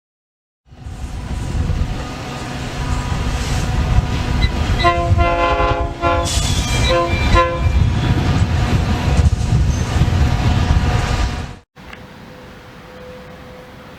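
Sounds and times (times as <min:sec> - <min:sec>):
train rumbling past: 0:00.7 - 0:13.9
locomotive air horn blasts: 0:04.8 - 0:07.8.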